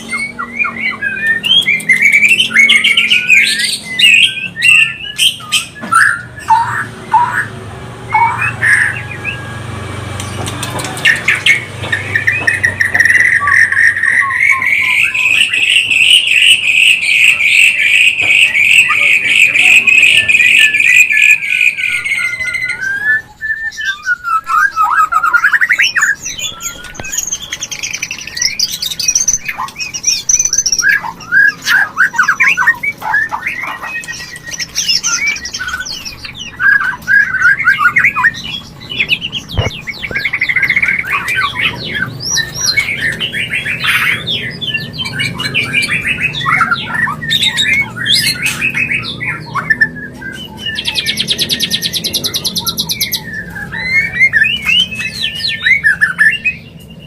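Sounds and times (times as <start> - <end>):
bird singing whistles and sharp notes: 0.0 - 7.5.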